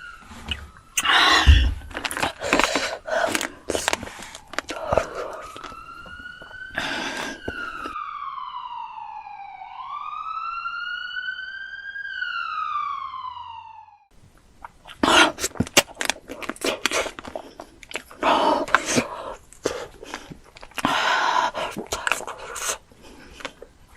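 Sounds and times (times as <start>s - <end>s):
siren wailing: 0.0s - 14.1s.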